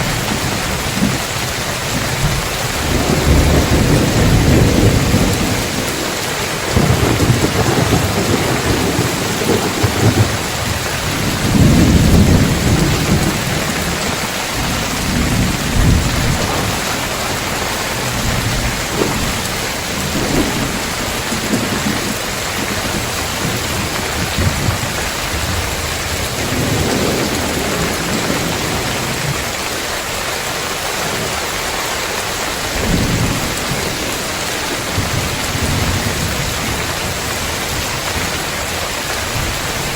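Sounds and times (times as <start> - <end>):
thunder rolling: 0.0 - 30.0, 30.9 - 39.9
heavy rain on roof tiles: 0.0 - 39.9.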